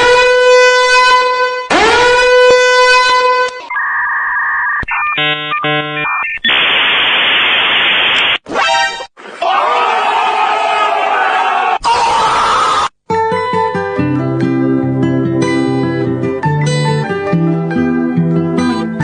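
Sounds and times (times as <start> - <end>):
horn-like blasts: 0.0 - 3.6
choppy beeping: 3.7 - 6.9
static-like hiss: 6.5 - 8.4.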